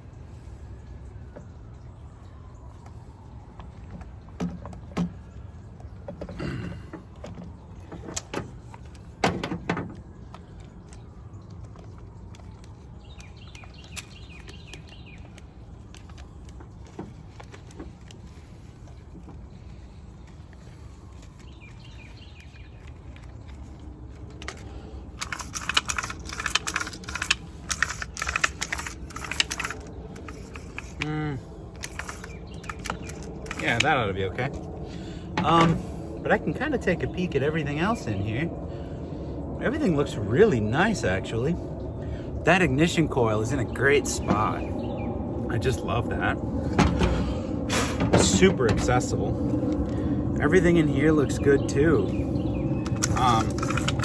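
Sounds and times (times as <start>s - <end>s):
plastic and metal parts clicking: 22.4s - 31.1s, 31.7s - 33.9s, 52.8s - 54.0s
scraping rattle: 24.4s - 31.1s, 31.7s - 33.9s, 52.9s - 54.0s.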